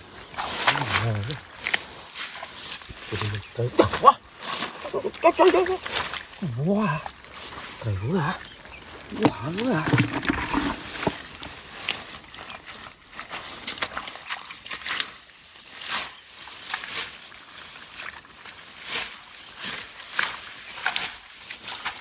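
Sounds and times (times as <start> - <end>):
hands rustling wet grass: 0.0 - 15.1
hands sloshing water: 0.3 - 14.8.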